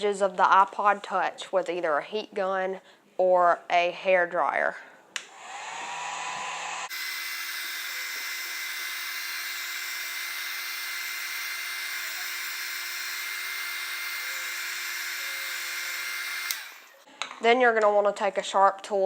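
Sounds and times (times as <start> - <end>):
hot-air blower rushing air: 5.2 - 17.0
fan motor whine: 5.4 - 17.0.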